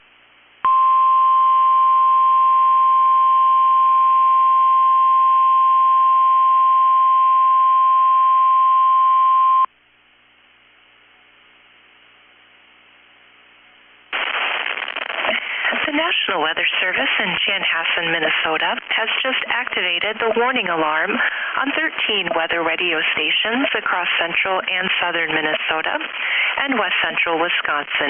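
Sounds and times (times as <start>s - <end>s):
faint radio hiss: 0.0s - 0.6s, 9.8s - 28.0s.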